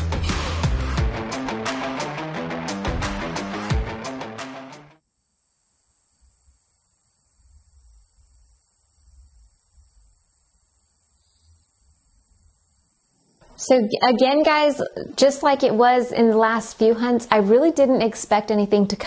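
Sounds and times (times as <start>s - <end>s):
music: 0.0s - 5.0s
high-pitched hiss: 5.0s - 13.8s.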